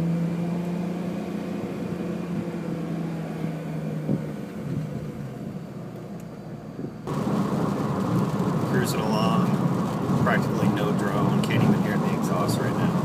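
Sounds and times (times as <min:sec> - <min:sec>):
car engine and exhaust drone: 0:00.0 - 0:13.0.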